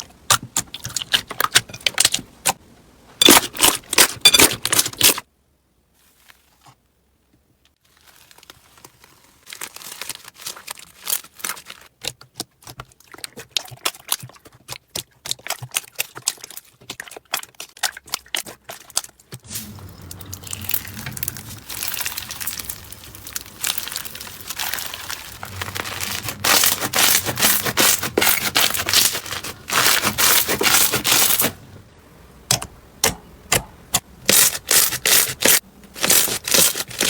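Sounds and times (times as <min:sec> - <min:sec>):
slime crackling and popping: 0:20.0 - 0:31.5.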